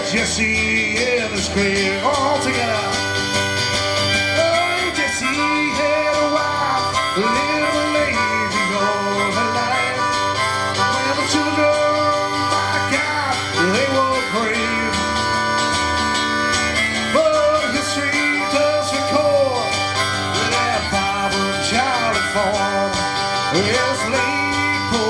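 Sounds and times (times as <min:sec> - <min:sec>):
harmonica: 0:00.0 - 0:25.0
strummed guitar: 0:00.0 - 0:25.0
person singing: 0:04.2 - 0:16.0, 0:16.9 - 0:25.0.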